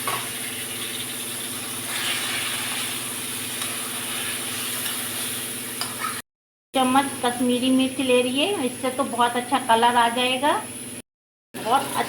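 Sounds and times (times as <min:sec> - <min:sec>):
food sizzling in a pan: 0:00.0 - 0:06.2.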